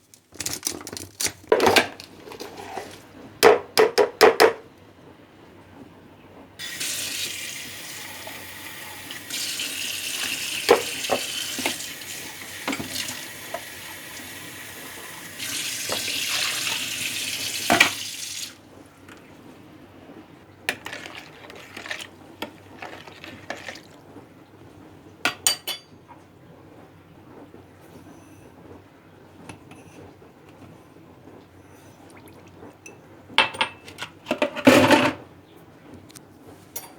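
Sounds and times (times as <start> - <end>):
tap running into a sink: 6.6 - 19.2
dishes clinking: 10.6 - 11.8, 25.3 - 26.0, 32.8 - 35.2.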